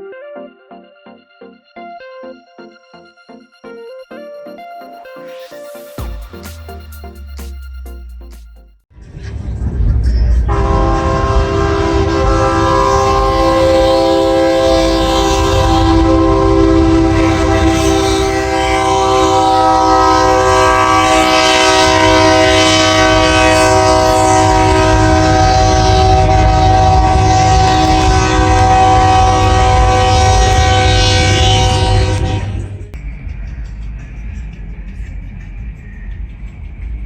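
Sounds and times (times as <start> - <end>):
train-style air horn chord: 10.4 - 33.0
low steady rumble: 23.2 - 37.0.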